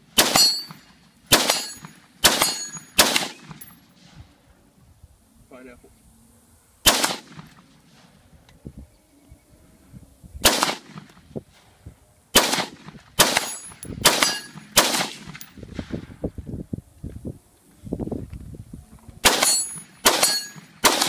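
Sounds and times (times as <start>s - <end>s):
rifle shots: 0.1s - 3.8s, 6.8s - 7.6s, 10.4s - 11.2s, 12.3s - 16.1s, 19.2s - 21.0s.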